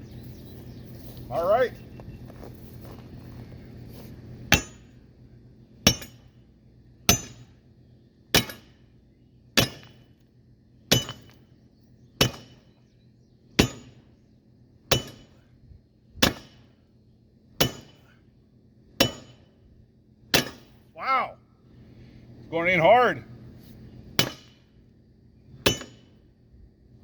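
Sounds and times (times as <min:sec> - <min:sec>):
hammer striking steel: 0:04.5 - 0:04.9, 0:05.9 - 0:06.3, 0:07.1 - 0:07.5, 0:08.4 - 0:08.7, 0:09.6 - 0:10.0, 0:10.9 - 0:11.4, 0:12.2 - 0:12.6, 0:13.6 - 0:14.0, 0:14.9 - 0:15.4, 0:16.2 - 0:16.6, 0:17.6 - 0:18.0, 0:19.0 - 0:19.5, 0:20.4 - 0:20.8, 0:24.2 - 0:24.6, 0:25.6 - 0:26.1.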